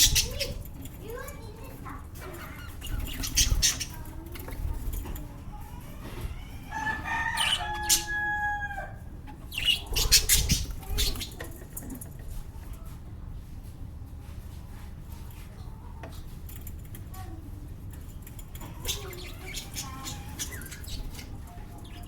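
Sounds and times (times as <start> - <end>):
rooster crowing: 6.5 - 9.0.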